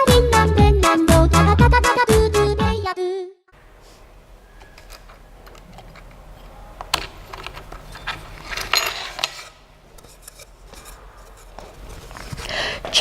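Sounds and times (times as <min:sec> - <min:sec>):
faint hum: 0:03.6 - 0:13.0.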